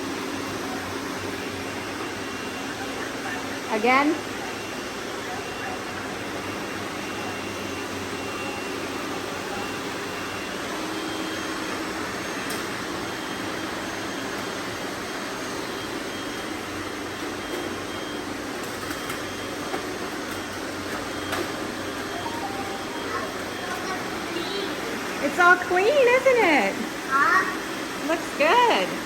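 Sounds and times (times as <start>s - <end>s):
robot vacuum whirring: 6.2s - 29.0s.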